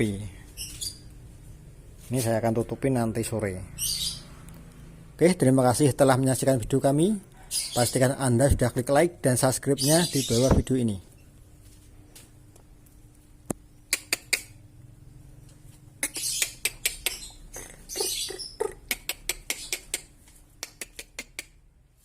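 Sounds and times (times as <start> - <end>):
clicks and taps from birdcage: 18.9 - 21.6.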